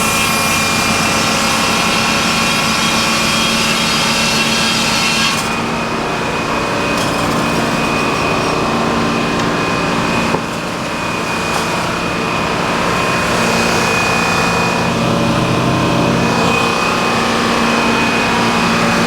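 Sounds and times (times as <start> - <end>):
saw cutting hiss: 0.0 - 5.6
sawmill engine humming: 0.0 - 19.0.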